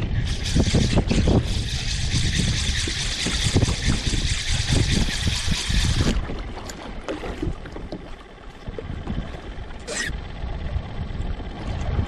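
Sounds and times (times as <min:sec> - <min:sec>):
wind buffeting microphone: 0:00.0 - 0:08.0, 0:08.7 - 0:12.0
water splashing around kayak: 0:02.7 - 0:09.9.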